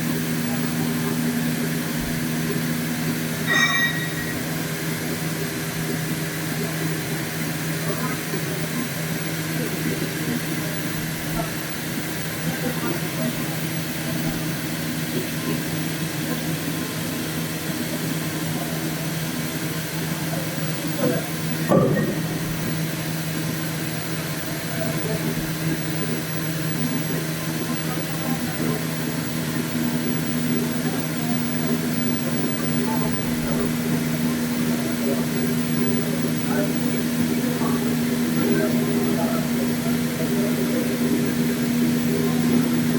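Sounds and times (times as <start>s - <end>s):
machine humming: 3.4s - 5.4s.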